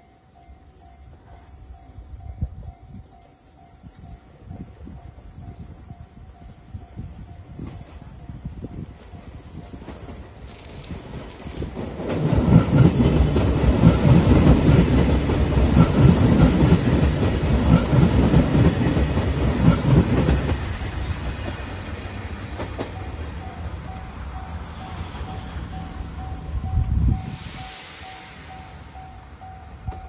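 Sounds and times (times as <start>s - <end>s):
train wheels clattering: 9.8s - 24.0s.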